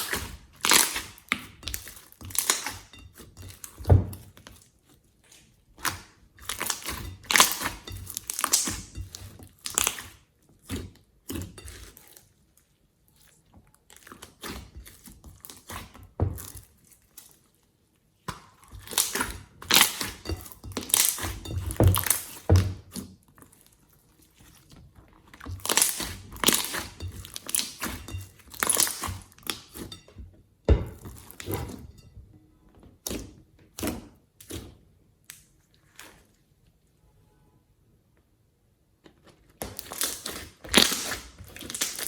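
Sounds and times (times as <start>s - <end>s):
slime squelching by hand: 0.0s - 30.0s, 39.4s - 42.0s.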